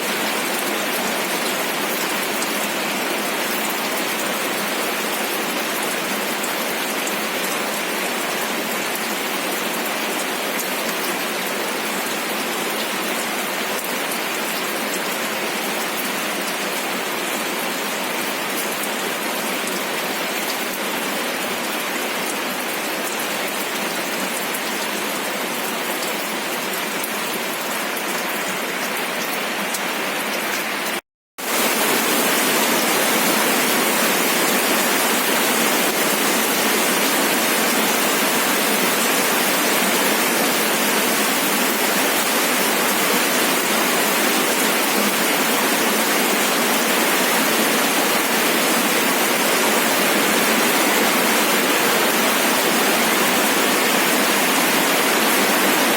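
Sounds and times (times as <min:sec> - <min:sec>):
heavy rain rushing: 0:00.0 - 0:55.9
steady rain: 0:00.0 - 0:55.9.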